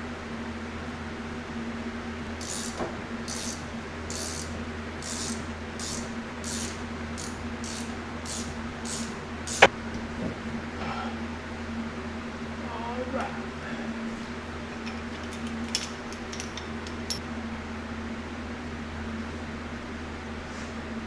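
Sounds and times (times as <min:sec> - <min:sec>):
hand ratchet clicking: 0:02.4 - 0:09.7
sharp metallic click: 0:05.0 - 0:09.7.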